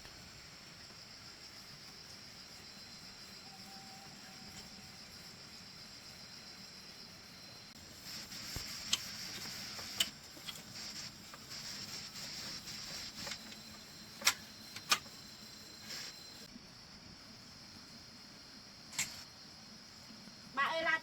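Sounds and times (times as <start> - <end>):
scratchy rubbing hiss: 7.7 - 16.5.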